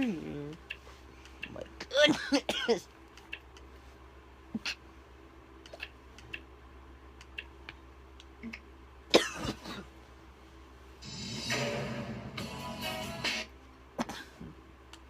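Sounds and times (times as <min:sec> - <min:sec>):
person coughing and clearing throat: 0:01.9 - 0:02.8, 0:09.1 - 0:09.9, 0:14.0 - 0:14.6
music: 0:11.0 - 0:13.6.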